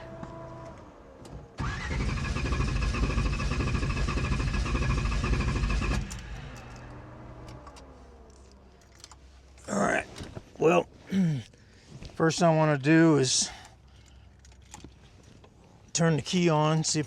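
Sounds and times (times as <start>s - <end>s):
car engine cranking with starter whine: 0.0s - 10.5s.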